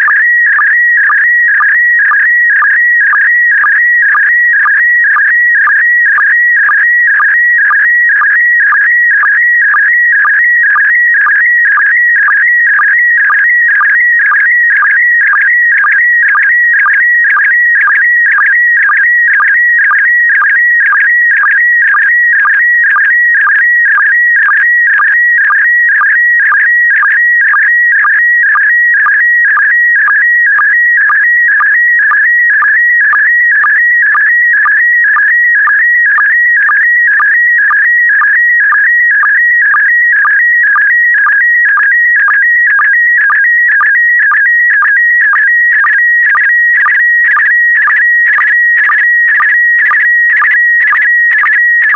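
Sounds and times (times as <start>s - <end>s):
regular signal pulse: 0.0s - 51.9s.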